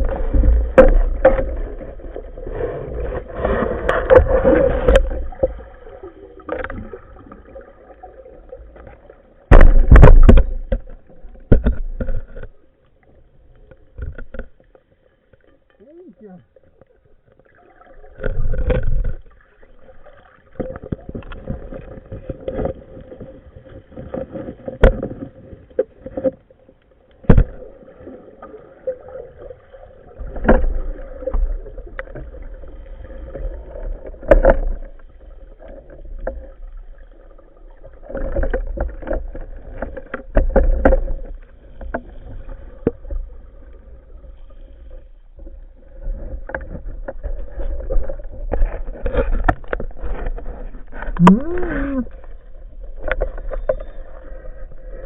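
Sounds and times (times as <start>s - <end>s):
muffled water sloshing: 0.0s - 55.0s
sharp clicks and knocks: 9.5s - 12.5s.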